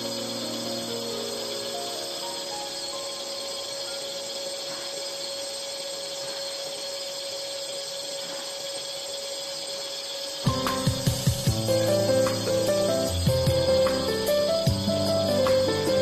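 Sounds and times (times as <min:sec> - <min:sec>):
lathe whirring: 0:00.0 - 0:16.0
music with sharp beats: 0:10.4 - 0:16.0.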